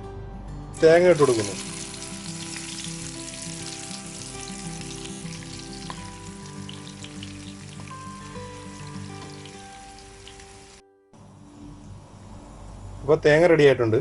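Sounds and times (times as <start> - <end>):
coconut frying in hot oil: 1.2 - 10.8.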